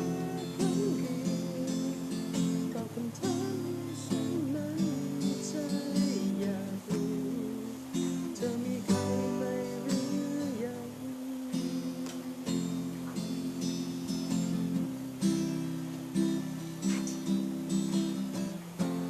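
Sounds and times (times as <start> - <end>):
acoustic guitar music: 0.0 - 19.0.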